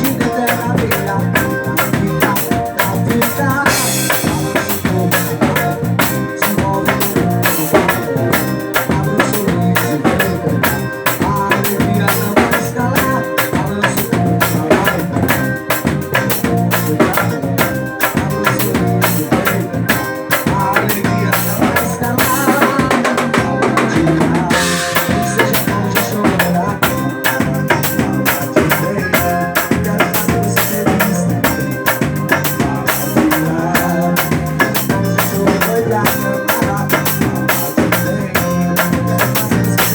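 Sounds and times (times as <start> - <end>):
loud music with drum beat: 0.0 - 39.9.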